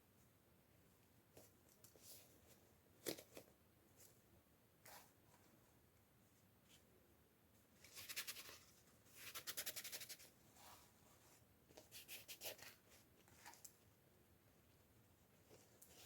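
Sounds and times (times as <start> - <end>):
hands scratching toy packaging: 7.9 - 10.3.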